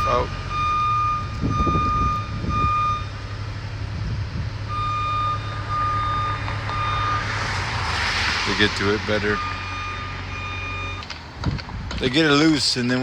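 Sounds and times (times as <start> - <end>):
back-up alarm beeps: 0.0 - 3.2, 4.7 - 7.3, 9.3 - 11.1
engine humming: 0.0 - 13.0.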